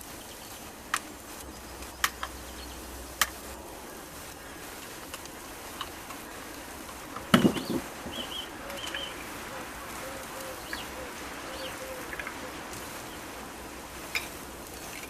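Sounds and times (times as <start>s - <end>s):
faint hiss: 0.0s - 15.0s
small bird chirping: 1.4s - 2.9s, 7.4s - 13.3s
pigeon cooing: 7.3s - 13.6s.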